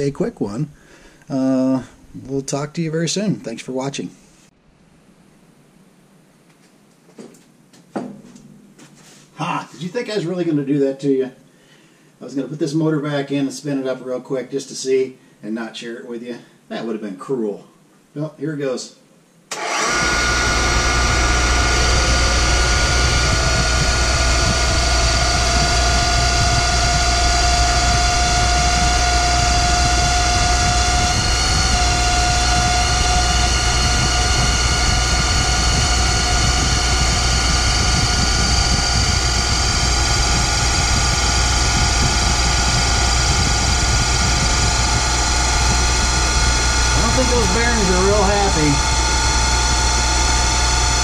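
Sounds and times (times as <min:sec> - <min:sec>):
grinder motor humming and whining: 0:19.5 - 0:51.0.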